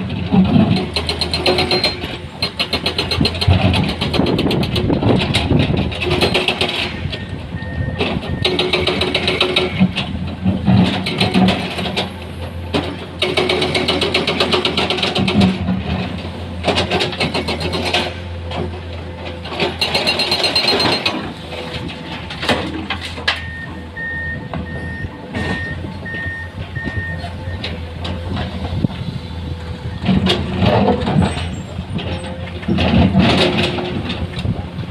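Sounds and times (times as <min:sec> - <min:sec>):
excavator diesel engine: 0:00.0 - 0:34.9
machinery rattling and scraping: 0:00.0 - 0:34.9
reversing alarm beeping: 0:07.1 - 0:08.8, 0:23.4 - 0:27.7.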